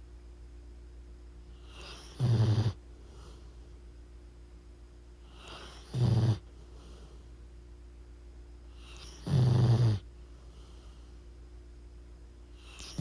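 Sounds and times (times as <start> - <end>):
dog snoring: 1.5 - 3.4, 5.2 - 7.1, 8.7 - 11.0, 12.5 - 13.0.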